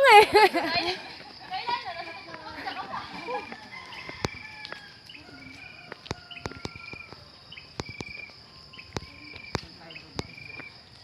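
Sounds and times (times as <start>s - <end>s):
insects buzzing: 0.0s - 11.0s.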